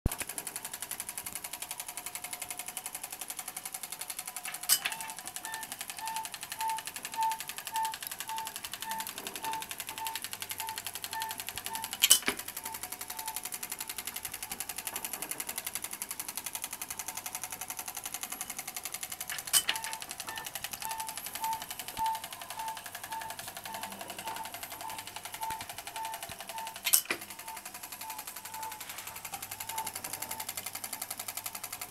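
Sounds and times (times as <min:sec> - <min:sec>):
motor with fast ticking: 0:00.1 - 0:31.9
pulsing mechanical beat: 0:04.9 - 0:31.9
loud mechanical clack: 0:19.2 - 0:20.4.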